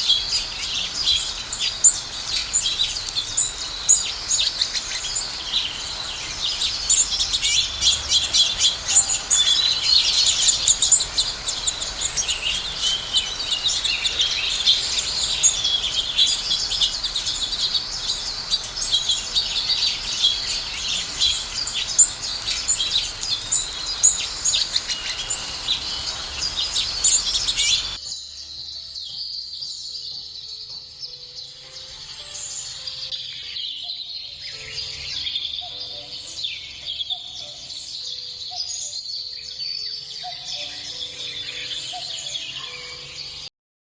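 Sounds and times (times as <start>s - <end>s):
sparrows chirping: 0.0s - 28.0s.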